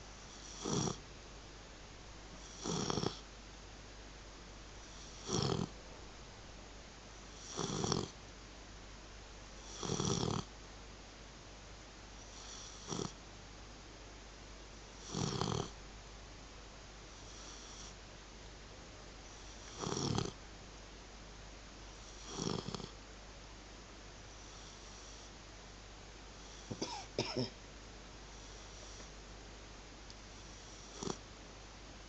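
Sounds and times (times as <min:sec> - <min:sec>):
dog snoring: 0:00.2 - 0:01.0, 0:02.4 - 0:03.2, 0:04.8 - 0:05.8, 0:07.2 - 0:08.2, 0:09.6 - 0:10.5, 0:12.2 - 0:13.2, 0:15.0 - 0:15.8, 0:17.1 - 0:18.0, 0:19.2 - 0:20.4, 0:22.0 - 0:23.0, 0:24.3 - 0:25.4, 0:26.3 - 0:27.2, 0:28.3 - 0:29.2, 0:30.3 - 0:31.2.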